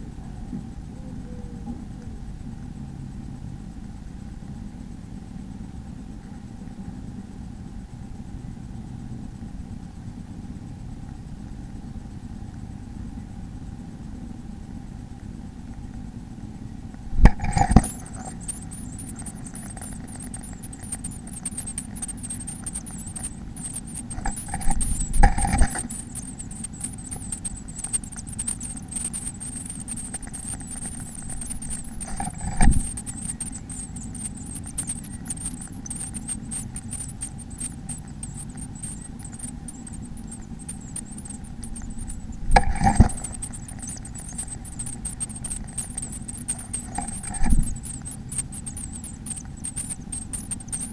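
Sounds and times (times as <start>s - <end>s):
steady low hum: 0.0s - 50.9s
thin high wavering tone: 17.1s - 50.9s
birds scratching in nest box: 17.2s - 50.9s.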